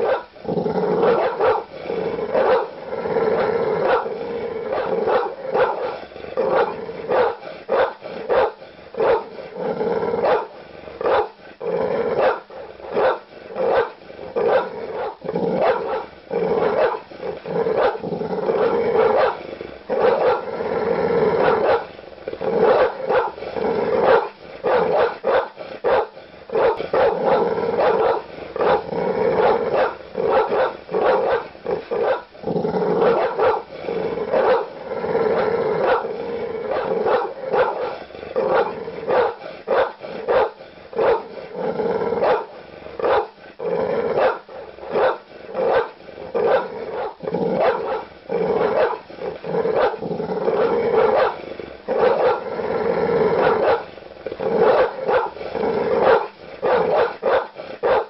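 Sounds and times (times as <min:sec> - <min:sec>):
big dogs barking aggressively: 0:00.0 - 0:58.0.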